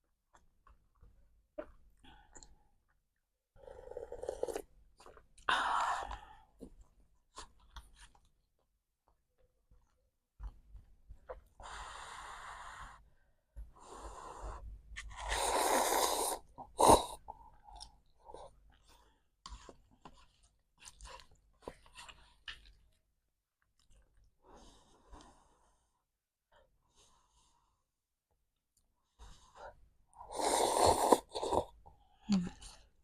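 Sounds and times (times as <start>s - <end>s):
person chewing: 15.0s - 23.0s.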